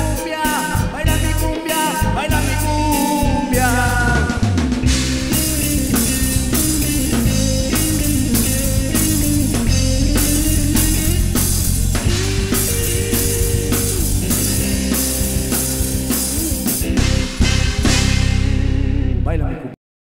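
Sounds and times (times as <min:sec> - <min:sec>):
drum kit beat: 0:00.0 - 0:18.9
electric guitar: 0:00.0 - 0:19.7
bass: 0:00.0 - 0:19.8.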